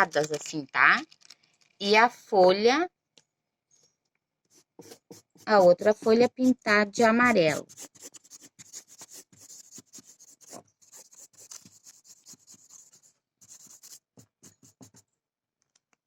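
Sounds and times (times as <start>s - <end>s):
marker scribbling on paper: 4.5s - 15.0s.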